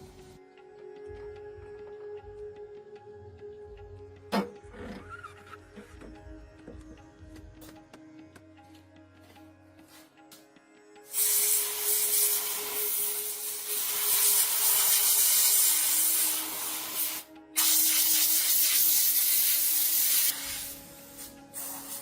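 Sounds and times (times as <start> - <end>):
pressurised spray hissing: 11.1 - 22.0.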